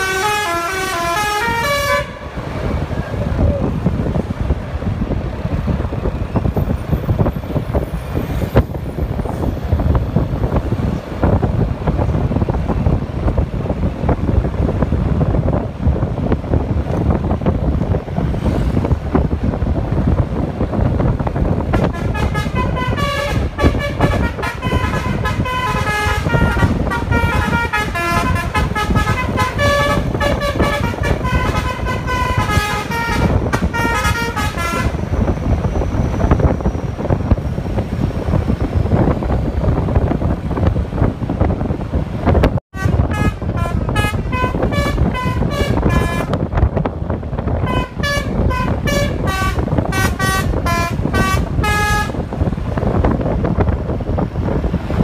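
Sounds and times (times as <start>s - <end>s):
bus horn playing a tune: 0.0s - 2.6s, 21.6s - 35.3s, 42.7s - 46.5s, 47.5s - 52.5s
engine rumble: 0.0s - 55.0s
wind noise: 0.0s - 55.0s.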